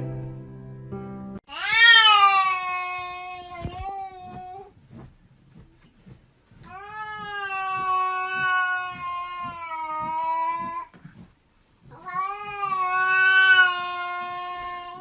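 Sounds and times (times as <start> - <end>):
cat yowling: 1.5 - 4.7, 6.7 - 10.9, 12.0 - 15.0.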